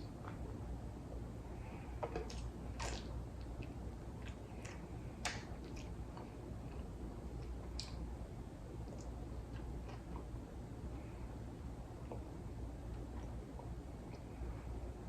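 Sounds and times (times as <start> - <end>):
steady low hum: 0.0 - 15.0
faint chewing: 1.6 - 8.1, 8.7 - 11.3.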